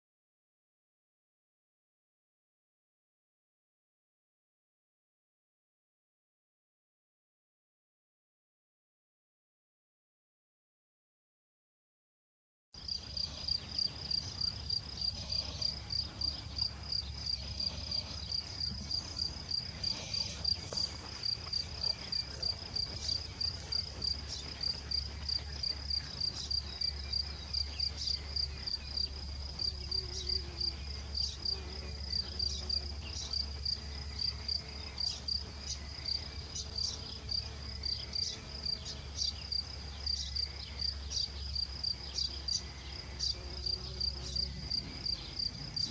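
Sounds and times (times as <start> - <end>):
cricket chirping: 12.8 - 45.9
faint low hum: 12.8 - 45.9.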